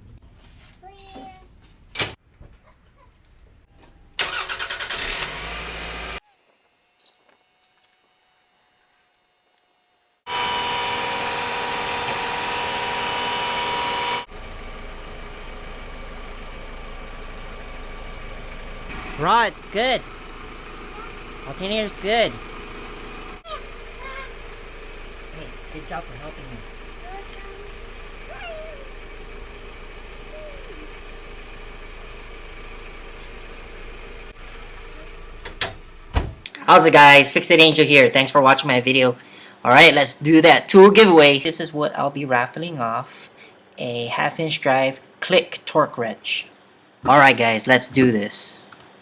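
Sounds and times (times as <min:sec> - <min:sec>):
car engine starting and idling: 0:04.1 - 0:06.2, 0:10.3 - 0:38.0.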